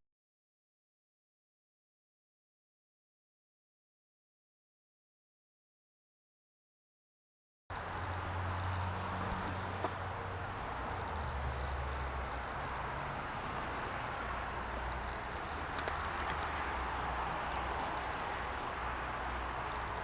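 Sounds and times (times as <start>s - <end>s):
engine-like hum: 7.7s - 20.0s
bird chirps: 14.9s - 15.2s.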